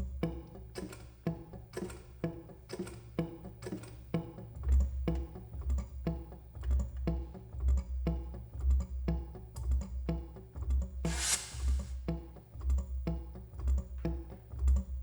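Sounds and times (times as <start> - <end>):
short clicking strikes with ring: 0.2 - 4.0.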